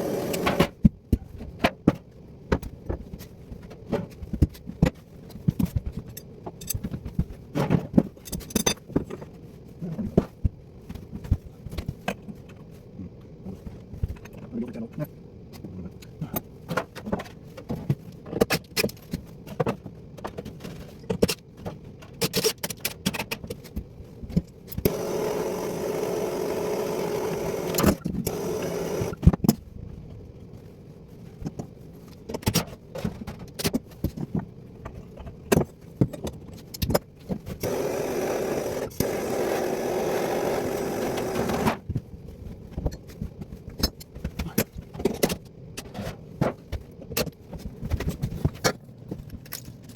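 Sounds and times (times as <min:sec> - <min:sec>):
power tool running: 0:00.0 - 0:00.7, 0:24.8 - 0:29.3, 0:37.6 - 0:41.8
parts clicking and scraping: 0:00.0 - 0:14.5, 0:15.5 - 0:49.9.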